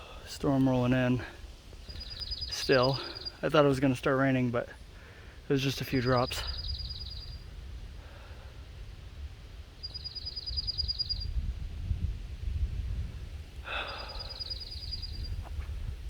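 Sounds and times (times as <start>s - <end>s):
wind buffeting microphone: 0.0s - 16.0s
small bird trilling: 2.0s - 3.4s, 6.0s - 7.4s, 9.8s - 11.3s, 14.1s - 15.4s.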